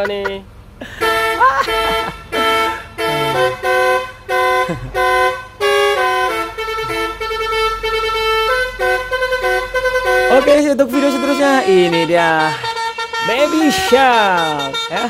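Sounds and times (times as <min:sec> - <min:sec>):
musical air horn tune: 0:01.0 - 0:15.0.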